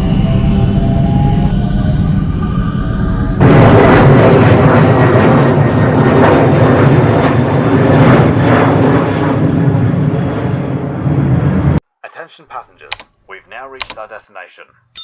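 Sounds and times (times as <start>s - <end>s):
aircraft engine drone: 0.0s - 11.8s.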